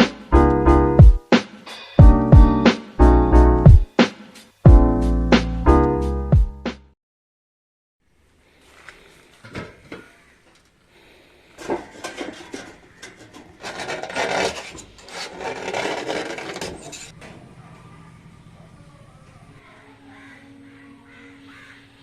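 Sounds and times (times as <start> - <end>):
scraping on a hard surface: 11.6 - 17.2.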